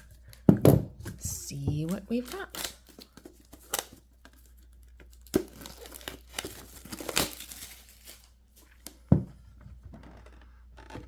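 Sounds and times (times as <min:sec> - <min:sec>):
plastic wrapping tearing and crinkling: 0:01.9 - 0:09.0.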